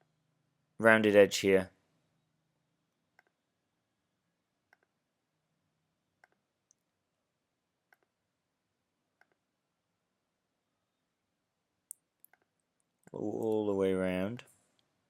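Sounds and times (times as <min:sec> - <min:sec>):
computer mouse clicks: 0:03.2 - 0:03.4, 0:04.7 - 0:05.0, 0:06.2 - 0:06.8, 0:07.9 - 0:08.2, 0:09.2 - 0:09.5.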